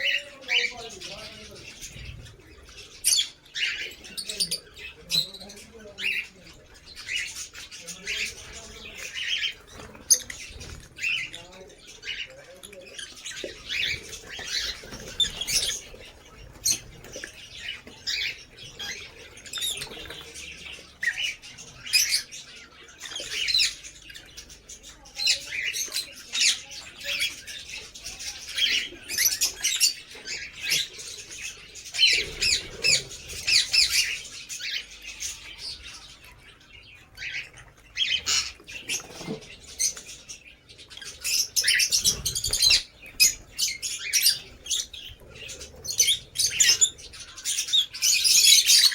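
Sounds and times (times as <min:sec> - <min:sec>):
lovebirds chirping and squawking: 0:00.0 - 0:48.9
fluttering wingbeats: 0:12.9 - 0:20.8.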